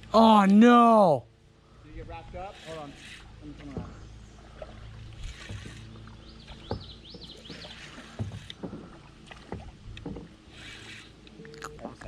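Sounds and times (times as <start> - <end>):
water and boat noise: 0.0 - 12.0
paddle knocking against hull: 3.6 - 4.1, 5.2 - 5.8, 6.4 - 10.4
bird chirping: 5.7 - 8.2.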